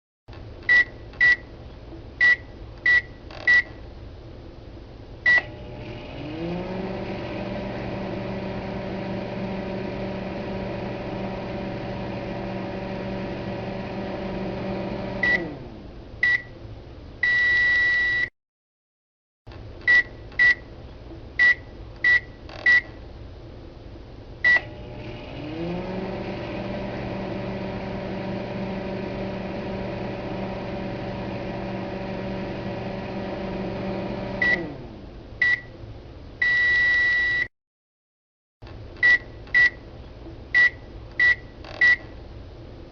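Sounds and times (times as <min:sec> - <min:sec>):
microwave beeps: 0:00.7 - 0:01.5, 0:02.2 - 0:03.8, 0:05.3 - 0:05.5, 0:14.8 - 0:15.6, 0:16.2 - 0:16.6, 0:17.2 - 0:18.3, 0:19.9 - 0:20.7, 0:21.4 - 0:23.0, 0:24.4 - 0:24.7, 0:32.6 - 0:34.8, 0:35.4 - 0:35.7, 0:36.4 - 0:37.5, 0:39.0 - 0:39.8, 0:40.6 - 0:42.1
microwave oven humming: 0:05.2 - 0:16.6, 0:24.4 - 0:37.3
long beep tone: 0:36.4 - 0:37.5.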